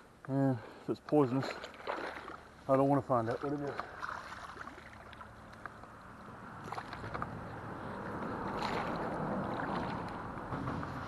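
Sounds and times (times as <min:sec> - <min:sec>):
vehicle road noise rushing: 0:05.2 - 0:11.0.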